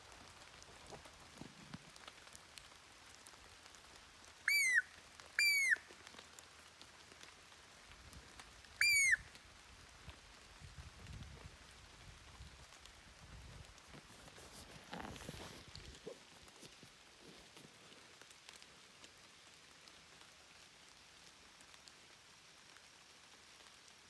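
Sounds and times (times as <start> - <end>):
squirrel call squeals: 4.5 - 5.8, 8.8 - 9.2.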